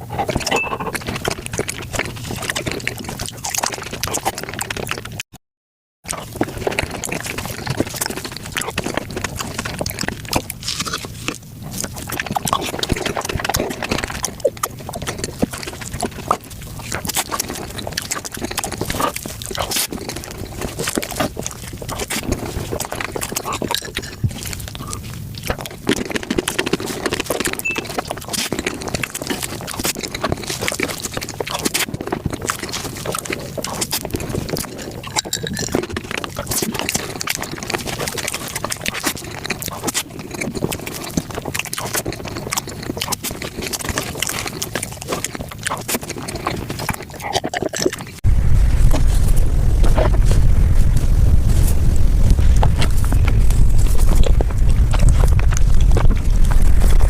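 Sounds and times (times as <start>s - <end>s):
sped-up wet chewing and slurping: 0.0s - 5.2s, 6.1s - 57.0s
loud low rumble: 48.2s - 57.0s.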